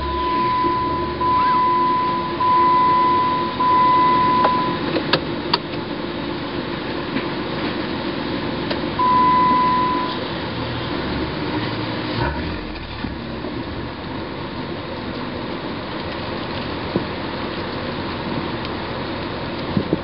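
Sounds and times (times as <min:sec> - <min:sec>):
high electronic beep: 0:00.0 - 0:04.8, 0:09.0 - 0:10.2
car engine idling: 0:00.0 - 0:20.0.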